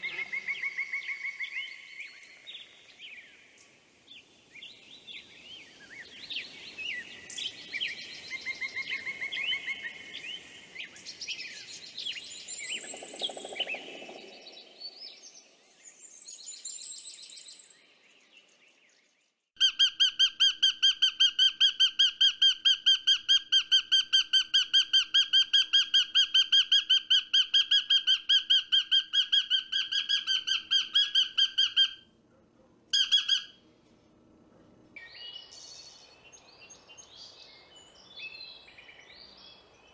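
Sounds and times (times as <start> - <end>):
birds chirping: 0.0 - 16.1
loud repeated bird call: 32.9 - 33.6.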